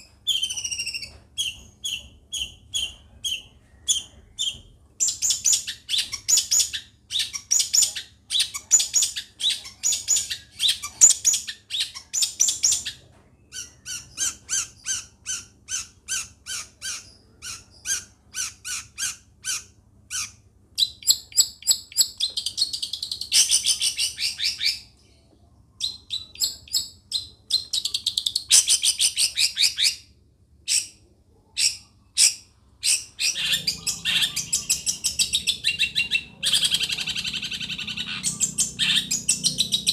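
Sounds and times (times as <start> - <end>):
shrike singing: 31.6 - 39.9.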